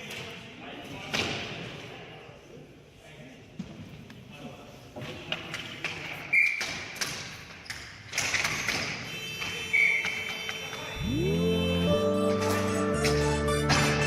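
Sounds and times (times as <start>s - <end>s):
horn-like chord: 11.0s - 14.0s.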